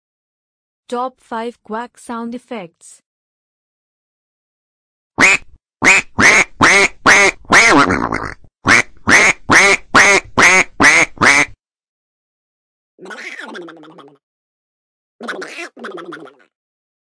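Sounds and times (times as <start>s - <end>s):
duck quacks: 5.2s - 11.6s, 15.2s - 16.5s.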